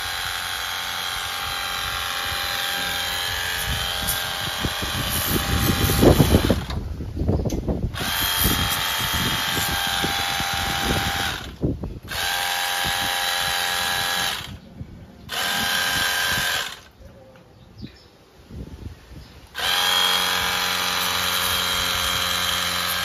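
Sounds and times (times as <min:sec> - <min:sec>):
power tool motor whining: 0:00.0 - 0:06.9, 0:07.9 - 0:14.6, 0:15.3 - 0:17.0, 0:19.5 - 0:23.0.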